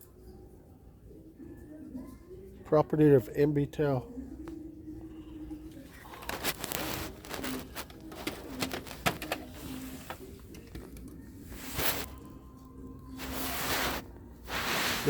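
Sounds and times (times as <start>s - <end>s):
rubbing noise: 6.1s - 10.4s, 11.5s - 12.2s, 13.2s - 15.0s
telephone parts clicking and knocking: 7.6s - 9.8s.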